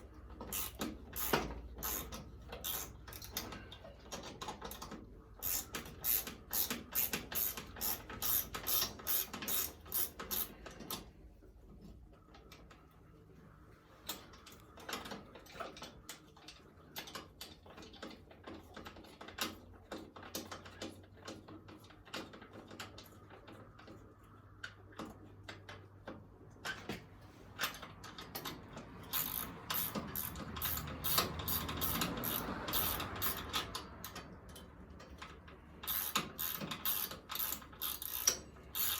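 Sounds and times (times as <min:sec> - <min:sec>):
ratchet wrench clicking: 0:00.5 - 0:03.5, 0:05.4 - 0:10.6, 0:29.0 - 0:34.3, 0:35.2 - 0:38.9.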